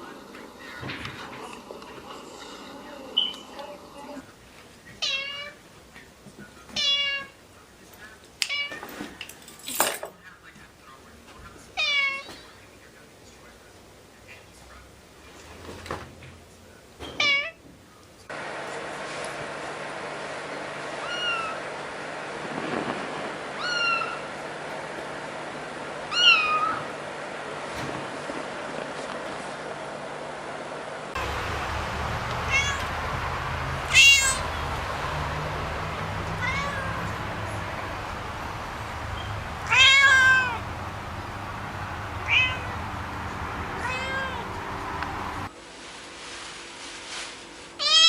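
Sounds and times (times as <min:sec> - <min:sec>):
cat meowing: 0:05.0 - 0:05.6, 0:06.8 - 0:07.3, 0:11.8 - 0:12.3, 0:17.2 - 0:17.6, 0:21.0 - 0:21.6, 0:23.6 - 0:24.3, 0:26.1 - 0:26.9, 0:32.2 - 0:33.1, 0:33.8 - 0:38.2, 0:38.8 - 0:40.9, 0:41.5 - 0:43.0, 0:43.7 - 0:45.5, 0:47.8 - 0:48.0
steady low hum: 0:18.2 - 0:45.5
kitten meowing: 0:21.0 - 0:21.6, 0:23.6 - 0:24.2, 0:26.1 - 0:26.9, 0:32.4 - 0:33.0, 0:33.9 - 0:34.5, 0:36.2 - 0:37.4, 0:39.2 - 0:40.6, 0:42.2 - 0:42.8, 0:43.8 - 0:44.6.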